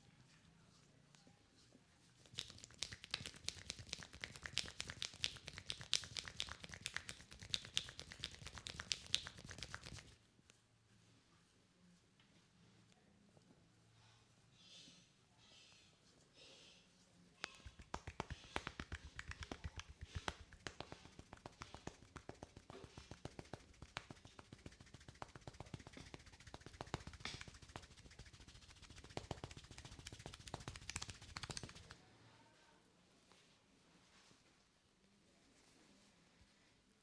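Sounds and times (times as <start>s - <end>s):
hands tapping and slapping scalp: 2.2s - 10.2s, 17.4s - 32.0s.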